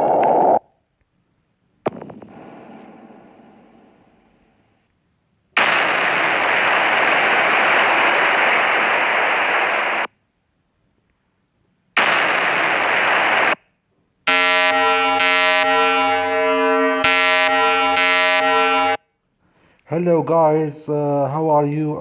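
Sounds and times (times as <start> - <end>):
loud even hiss: 1.9 - 4.7
pulsing buzzing alarm tone: 14.3 - 19.0.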